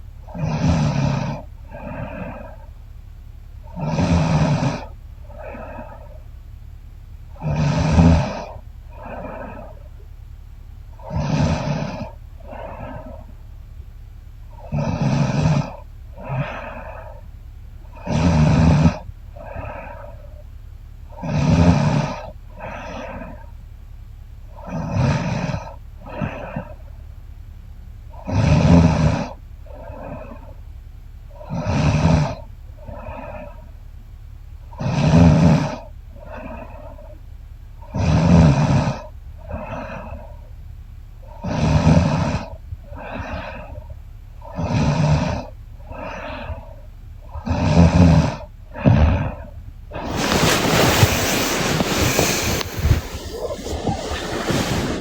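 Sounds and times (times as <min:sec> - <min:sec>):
soft breathing: 0:48.8 - 0:55.0
loud even hiss: 0:50.0 - 0:55.0
woman snoring: 0:50.0 - 0:55.0.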